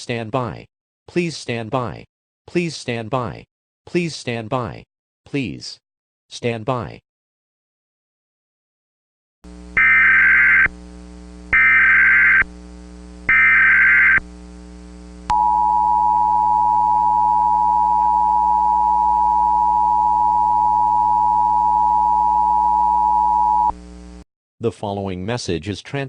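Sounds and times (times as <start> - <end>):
low electrical hum: 9.5 - 24.2
harsh digital data bursts: 9.8 - 10.7, 11.5 - 12.5, 13.3 - 14.2
loud steady alarm tone: 9.8 - 10.7, 11.5 - 12.5, 13.3 - 14.2.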